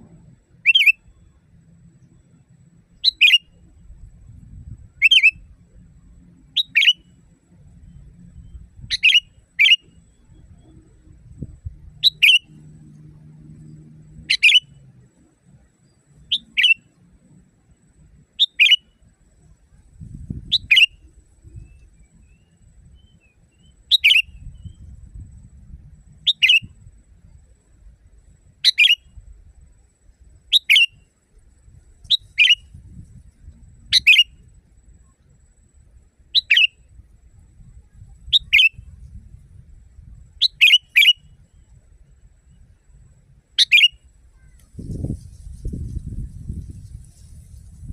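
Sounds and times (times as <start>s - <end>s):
bird sharp calls: 0.6s - 1.1s, 3.0s - 3.6s, 5.0s - 5.4s, 6.6s - 7.1s, 8.9s - 10.0s, 12.0s - 12.6s, 14.2s - 14.8s, 16.2s - 16.9s, 18.4s - 18.9s, 20.4s - 21.0s, 23.0s - 24.8s, 26.3s - 26.7s, 28.6s - 29.1s, 30.5s - 31.0s, 32.1s - 32.7s, 33.9s - 34.3s, 36.4s - 36.8s, 38.3s - 38.8s, 40.4s - 41.3s, 43.6s - 45.1s.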